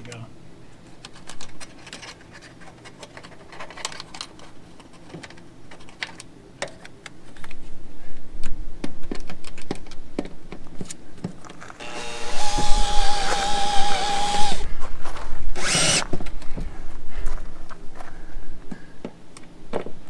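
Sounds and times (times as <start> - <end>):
power drill whirring: 11.8 - 14.7, 15.6 - 16.1.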